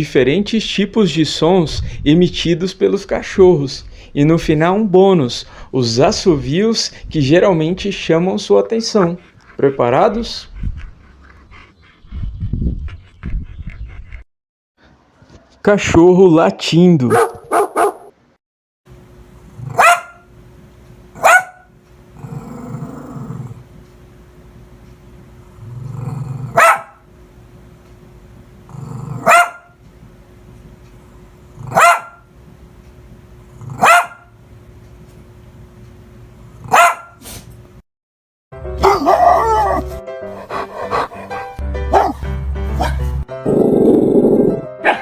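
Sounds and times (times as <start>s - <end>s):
dog growling: 9.0s - 14.2s, 22.2s - 23.7s, 25.4s - 26.6s, 28.6s - 29.4s, 31.5s - 31.8s, 33.5s - 33.9s, 38.8s - 42.2s, 42.8s - 45.0s
dog barking: 17.1s - 18.2s, 19.7s - 20.3s, 21.2s - 21.7s, 26.5s - 27.0s, 29.2s - 29.8s, 31.7s - 32.3s, 33.8s - 34.3s, 36.7s - 37.2s, 38.8s - 39.9s, 40.9s - 42.2s, 42.8s - 43.1s.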